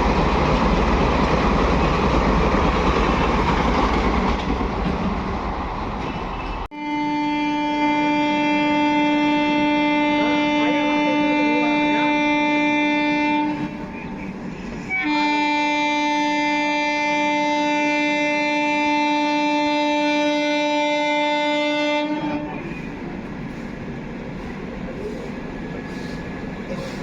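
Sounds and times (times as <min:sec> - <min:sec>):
train running noise: 0:00.0 - 0:06.7, 0:07.3 - 0:27.0
train horn blasts: 0:06.7 - 0:13.9, 0:14.8 - 0:22.8.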